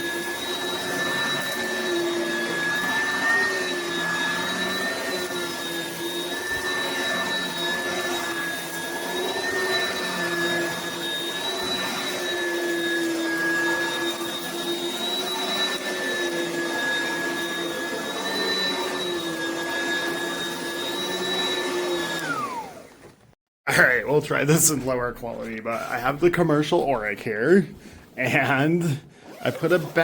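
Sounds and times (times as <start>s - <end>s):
vacuum motor winding down: 0.0s - 23.2s
vacuum cleaner whining: 0.0s - 30.0s.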